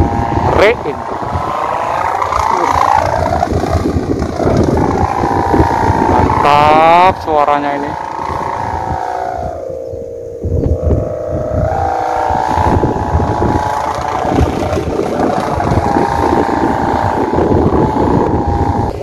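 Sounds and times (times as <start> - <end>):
kite hummer droning: 0.0 - 19.0
wind buffeting microphone: 0.0 - 19.0.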